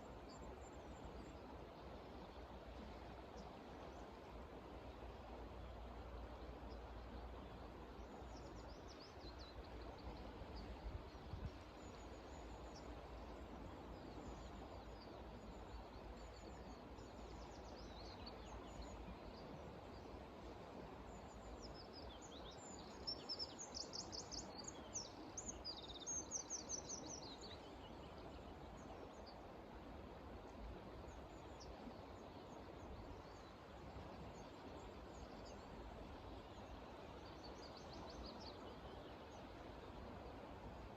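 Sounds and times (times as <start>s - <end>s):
outdoor background hiss: 0.0s - 40.9s
small birds chirping: 21.1s - 29.3s.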